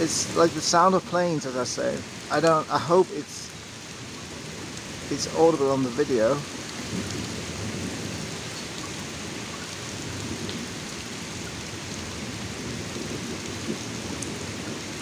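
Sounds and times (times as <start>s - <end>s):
heavy rain pouring: 0.0s - 15.0s
continuous rumbling thunder: 3.5s - 15.0s.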